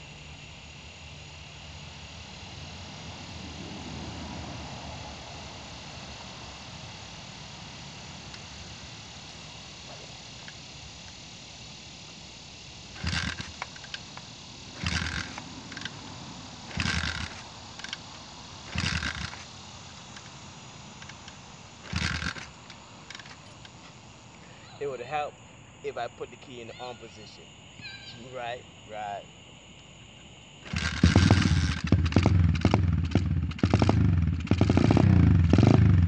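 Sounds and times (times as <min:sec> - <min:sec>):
dirt bike engine turning over: 0:08.2 - 0:24.0, 0:30.1 - 0:36.0.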